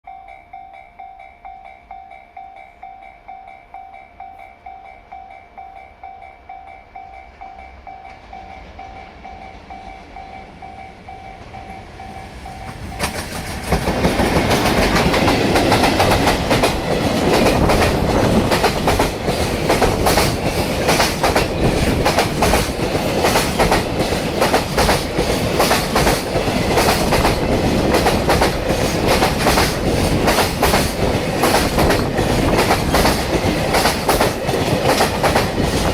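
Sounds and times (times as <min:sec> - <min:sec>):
level crossing warning bell: 0:00.0 - 0:13.3
train wheels clattering over rail joints: 0:12.6 - 0:35.9.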